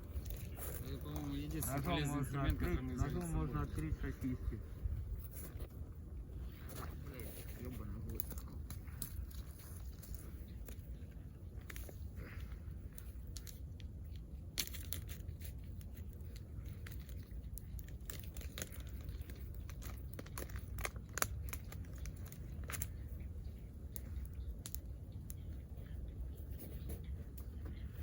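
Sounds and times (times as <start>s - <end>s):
packaging crinkling and tearing: 14.5s - 23.0s.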